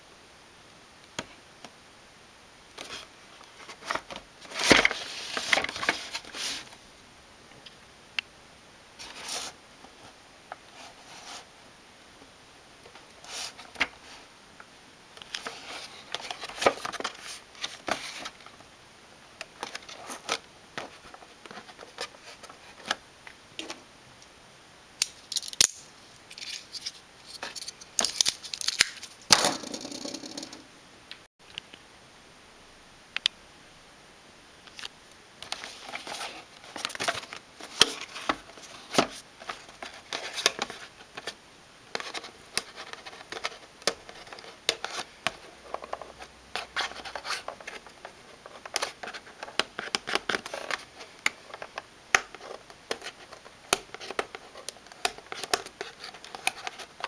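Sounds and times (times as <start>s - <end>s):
packaging rustling and scraping: 2.8s - 6.8s, 9.0s - 11.5s, 15.3s - 18.6s, 19.6s - 23.0s, 35.4s - 41.4s, 42.0s - 57.0s.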